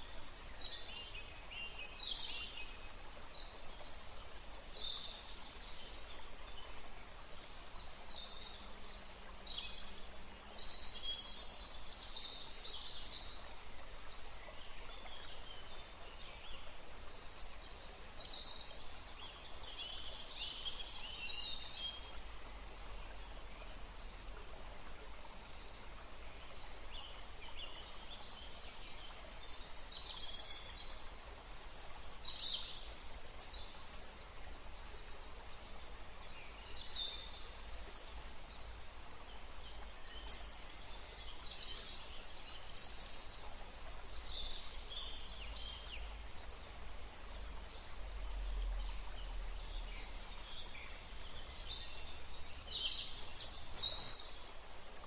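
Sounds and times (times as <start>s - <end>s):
faint outdoor hiss: 0.0s - 55.0s
songbirds chirping: 0.0s - 55.0s.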